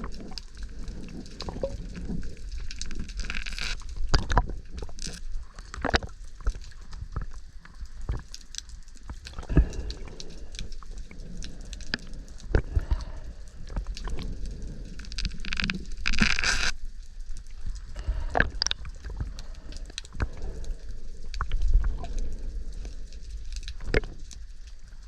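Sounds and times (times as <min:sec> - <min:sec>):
low rumble of water movement: 0:00.0 - 0:25.0
underwater clicks and knocks: 0:04.0 - 0:07.4, 0:18.0 - 0:20.5, 0:23.7 - 0:24.3.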